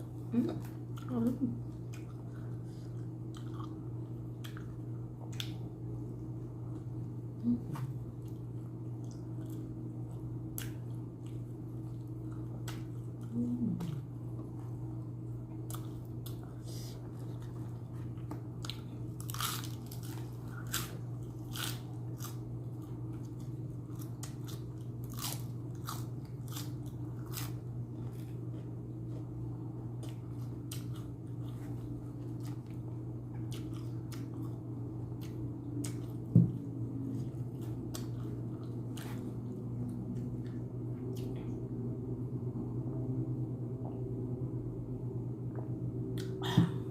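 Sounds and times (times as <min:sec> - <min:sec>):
steady low hum: 0:00.0 - 0:46.9
crunchy bites and chewing: 0:18.3 - 0:29.3.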